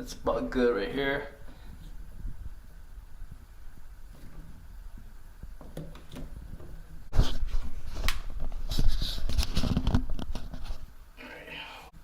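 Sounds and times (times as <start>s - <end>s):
handling knocks and clicks: 5.5s - 7.0s.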